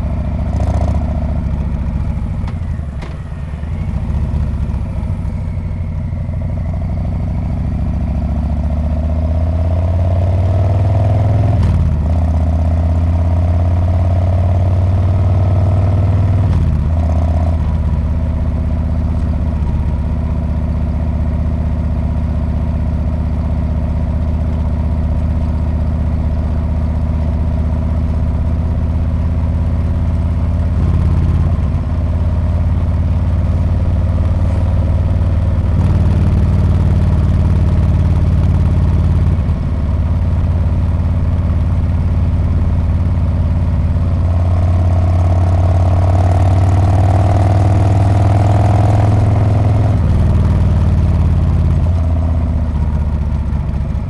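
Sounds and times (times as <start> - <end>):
motorcycle engine exhaust note: 0.1 - 8.2, 30.9 - 40.3.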